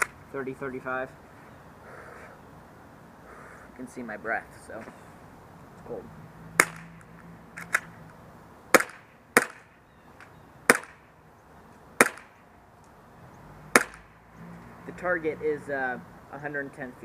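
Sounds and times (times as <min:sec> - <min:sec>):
airsoft pistol shots: 0:06.6 - 0:06.8, 0:08.7 - 0:09.7, 0:10.7 - 0:11.0, 0:12.0 - 0:12.4, 0:13.7 - 0:14.1.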